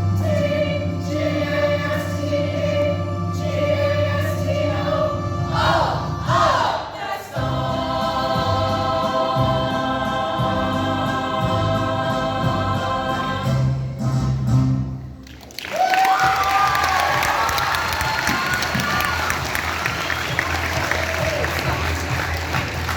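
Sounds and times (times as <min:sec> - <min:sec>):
choir singing: 0:00.0 - 0:14.1
audience applause and cheering: 0:15.2 - 0:22.9.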